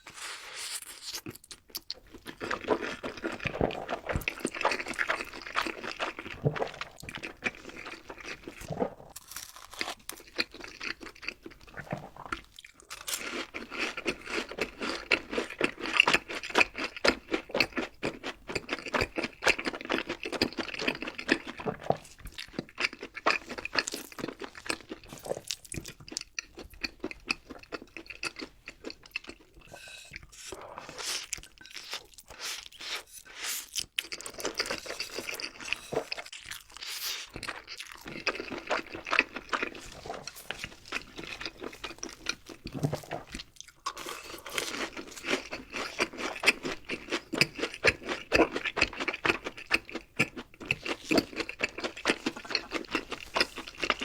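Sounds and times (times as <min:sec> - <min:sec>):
crunchy bites of fried food: 0:00.9 - 0:17.9
chewing: 0:01.1 - 0:54.0.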